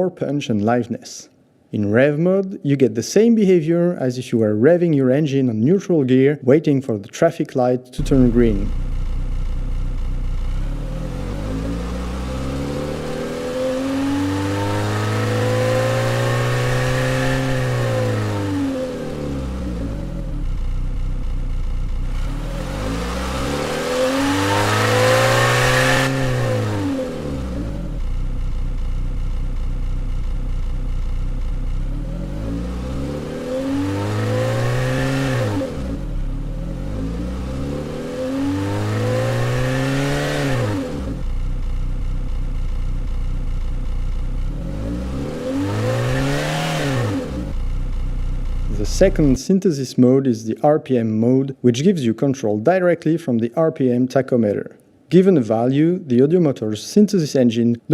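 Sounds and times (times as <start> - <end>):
car engine revving: 8.0 - 49.4.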